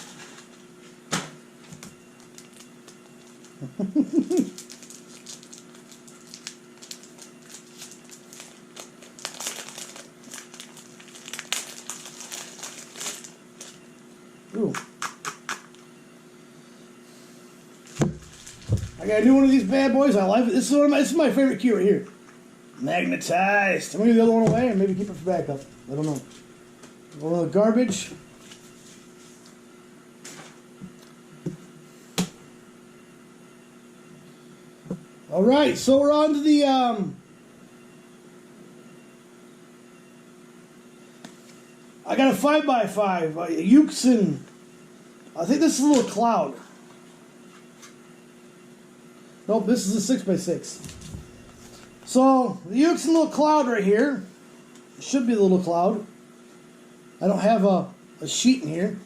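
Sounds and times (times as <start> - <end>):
faint steady hum: 0.0 - 59.0
packaging crinkling: 2.2 - 3.6, 4.2 - 13.8, 17.8 - 19.7.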